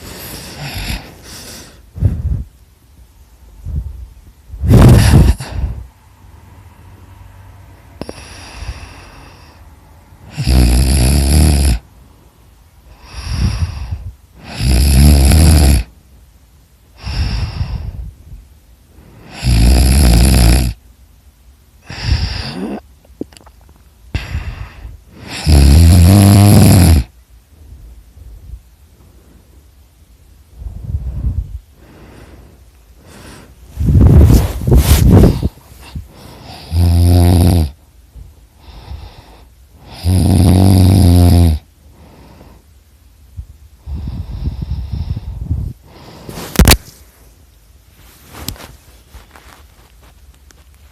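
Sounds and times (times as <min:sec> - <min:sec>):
person snoring loudly: 0:00.0 - 0:02.4, 0:04.6 - 0:05.9, 0:10.2 - 0:11.8, 0:12.9 - 0:15.9, 0:19.2 - 0:20.8, 0:21.8 - 0:22.8, 0:24.2 - 0:27.1, 0:33.0 - 0:37.8, 0:38.6 - 0:41.7.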